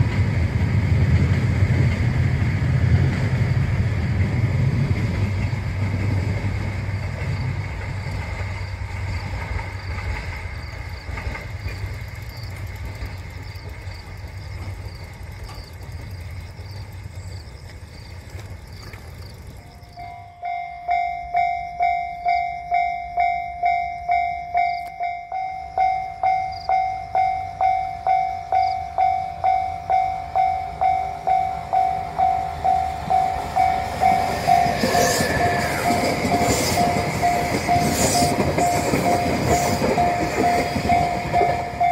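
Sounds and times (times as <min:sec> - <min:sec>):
diesel railcar rumbling past: 0:00.0 - 0:41.9
level crossing bell ringing: 0:20.0 - 0:41.9.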